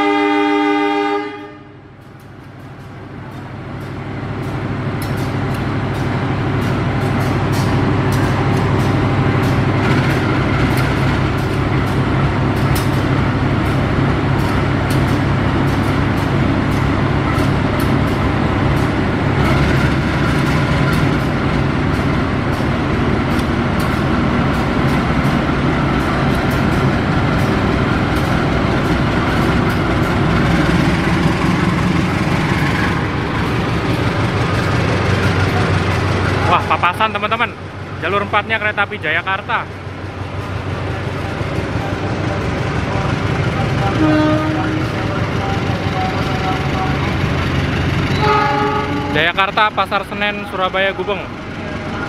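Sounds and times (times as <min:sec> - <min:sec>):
train rolling past: 0:00.0 - 0:52.0
wheels clicking on rails: 0:02.0 - 0:37.5.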